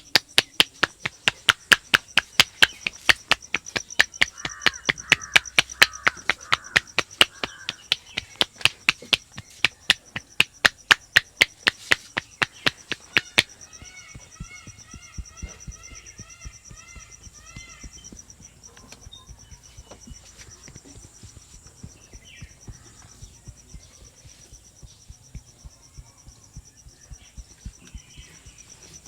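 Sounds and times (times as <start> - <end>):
hands clapping on head: 0.0 - 19.0
short chirping calls: 0.0 - 29.0.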